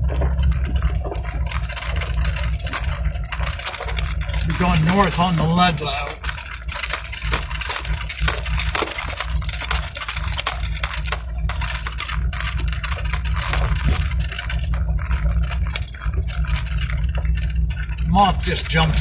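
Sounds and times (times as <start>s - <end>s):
engine and road rumble: 0.0s - 4.6s
cab rattling and clicking: 0.0s - 19.0s.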